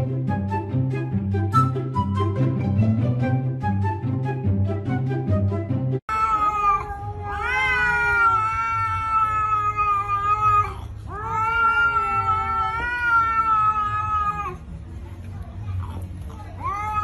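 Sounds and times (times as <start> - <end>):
cat yowling meows: 6.1 - 14.6, 16.6 - 17.0.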